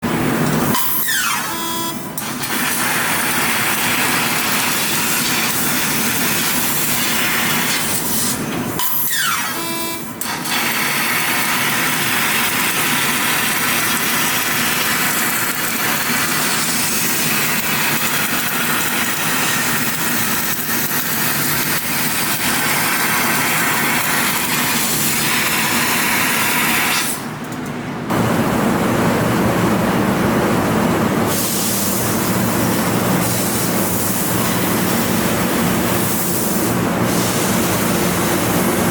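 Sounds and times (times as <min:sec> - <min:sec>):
laser cutter hissing rush: 0:02.5 - 0:08.4, 0:30.8 - 0:38.9.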